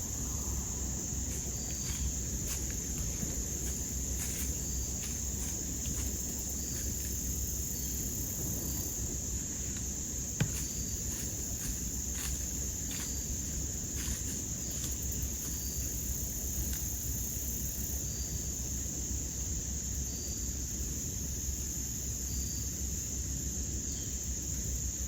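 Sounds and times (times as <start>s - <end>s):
low background rumble: 0.0s - 19.4s
insects chirping: 0.0s - 25.0s.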